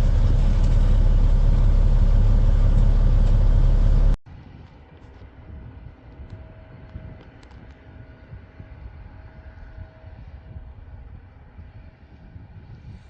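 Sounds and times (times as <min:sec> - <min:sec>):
diesel engine rumbling: 0:00.0 - 0:04.2.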